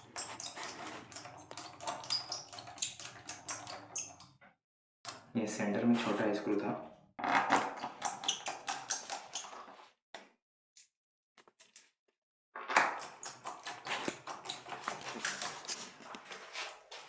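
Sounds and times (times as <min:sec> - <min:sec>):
screwdriver clicking and rattling: 0:00.2 - 0:04.2.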